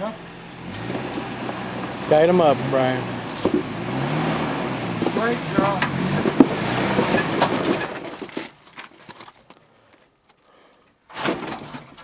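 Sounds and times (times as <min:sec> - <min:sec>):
off-road vehicle climbing rock: 0:00.0 - 0:09.5.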